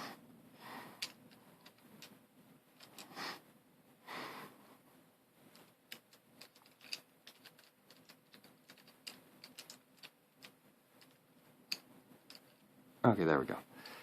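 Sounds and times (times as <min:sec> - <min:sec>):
plastic puzzle pieces clicking: 0:01.0 - 0:02.2, 0:02.8 - 0:03.1, 0:05.5 - 0:12.6.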